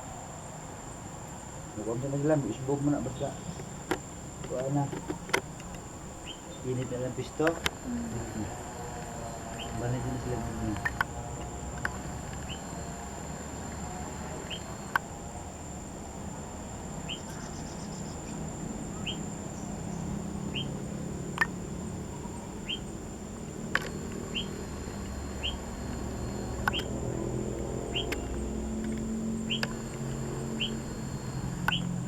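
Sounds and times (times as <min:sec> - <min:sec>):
sharp clicks: 0:03.5 - 0:07.9, 0:09.0 - 0:12.7, 0:20.6 - 0:21.6, 0:22.6 - 0:32.0.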